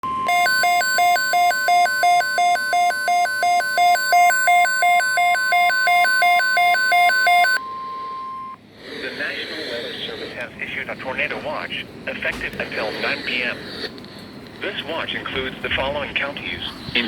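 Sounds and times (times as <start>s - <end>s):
steady warning alarm tone: 0.0s - 8.6s.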